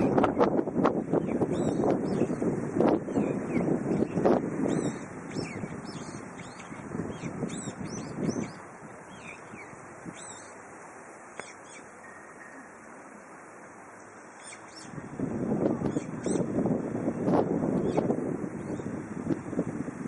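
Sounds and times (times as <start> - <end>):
wind gusts on microphone: 0.0 - 11.3, 14.6 - 20.0
bird chirping: 1.2 - 2.4, 3.1 - 10.6, 11.4 - 12.8, 14.0 - 15.0, 15.9 - 16.5.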